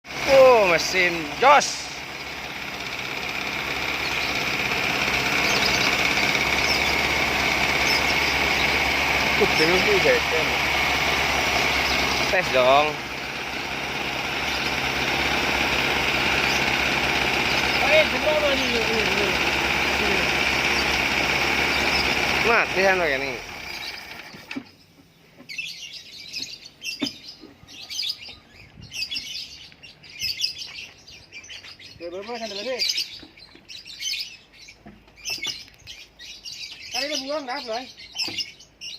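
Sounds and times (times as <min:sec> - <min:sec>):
engine running: 0:00.0 - 0:24.8
small birds twittering: 0:00.1 - 0:38.9.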